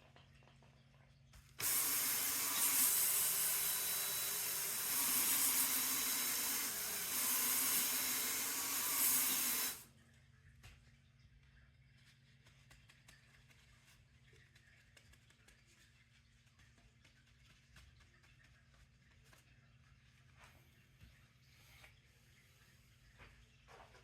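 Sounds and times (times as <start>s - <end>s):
power drill scrub brush scrubbing: 1.6s - 9.8s.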